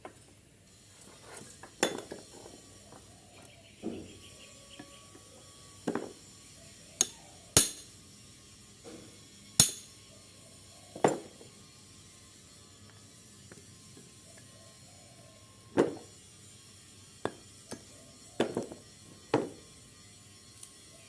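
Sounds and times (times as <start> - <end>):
hammer striking metal blade: 7.0 - 7.9, 9.6 - 9.9.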